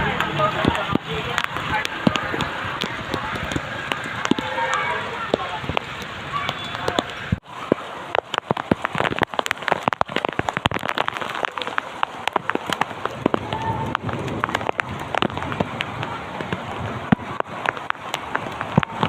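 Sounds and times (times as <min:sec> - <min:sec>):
heavy rain: 0:00.0 - 0:19.0.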